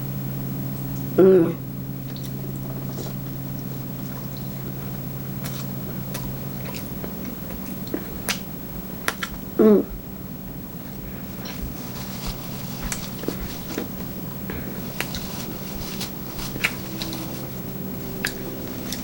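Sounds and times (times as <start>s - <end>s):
low steady hum: 0.0s - 19.0s
person humming mm: 1.1s - 3.2s, 9.5s - 10.0s
person chewing: 2.1s - 19.0s.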